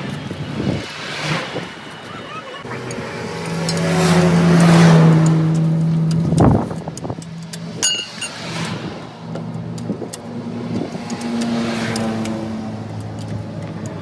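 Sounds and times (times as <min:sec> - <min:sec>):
motor humming: 0:02.6 - 0:07.5
ringing metal clink: 0:07.8 - 0:08.5
scattered clicks: 0:11.1 - 0:14.0.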